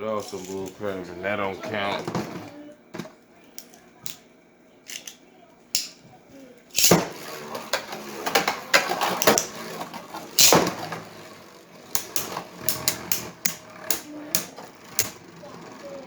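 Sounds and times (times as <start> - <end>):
spinning tops clashing: 6.7 - 11.2, 11.8 - 15.2.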